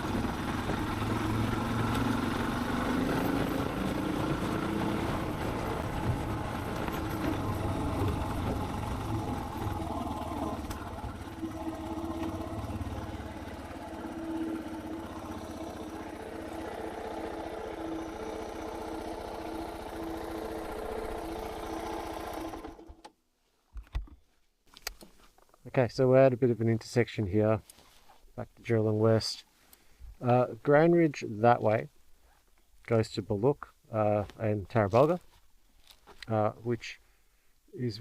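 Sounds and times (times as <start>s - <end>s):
motorcycle engine running: 0.0s - 22.9s.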